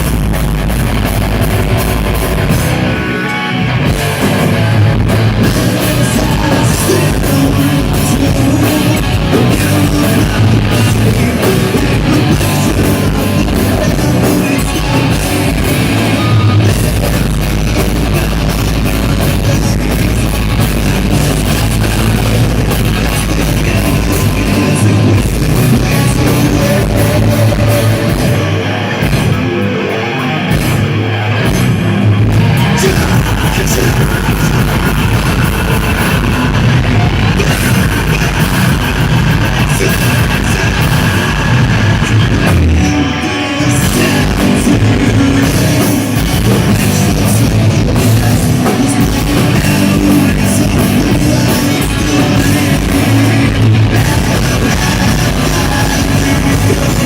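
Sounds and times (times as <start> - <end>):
drum kit: 0.0 - 57.0
electric guitar: 0.0 - 57.0
person singing: 2.3 - 57.0.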